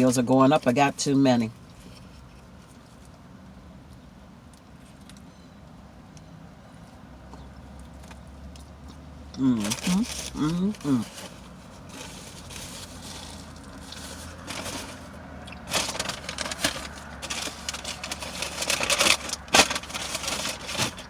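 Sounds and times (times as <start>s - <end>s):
low hum inside car: 0.0s - 21.0s
paper bag rustling: 9.6s - 21.0s.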